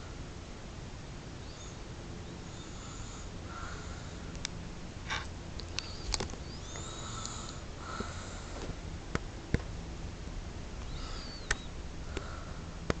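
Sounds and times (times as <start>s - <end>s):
steady low hum: 0.0s - 13.0s
person breathing noisily through nose: 2.5s - 4.3s, 5.9s - 8.7s, 10.9s - 12.8s.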